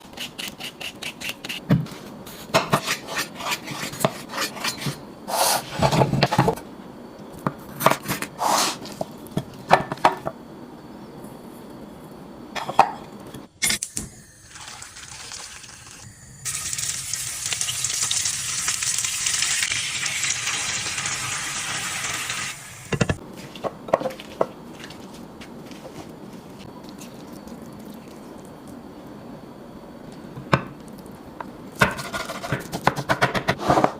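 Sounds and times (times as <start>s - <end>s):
chicken frying in hot oil: 14.5s - 23.0s.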